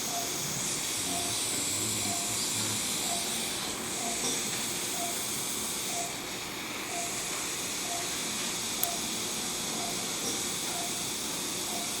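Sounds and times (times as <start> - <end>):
patient monitor beeps: 0.0 - 0.5, 1.1 - 1.4, 2.0 - 3.4, 4.9 - 5.2, 6.9 - 7.2, 10.7 - 11.0, 11.7 - 12.0
sharp click: 8.8 - 9.0.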